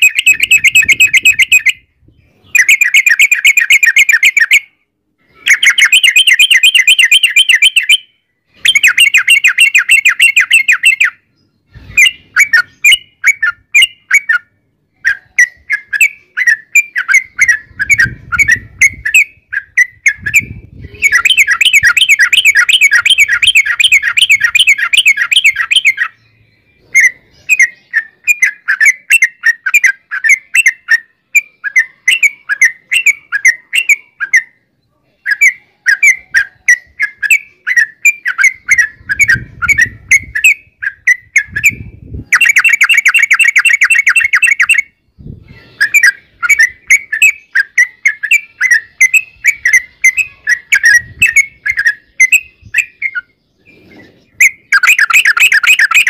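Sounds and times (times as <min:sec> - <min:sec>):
bird chattering phrases: 0:00.0 - 0:01.8, 0:02.4 - 0:08.0, 0:08.6 - 0:26.2, 0:26.8 - 0:56.0.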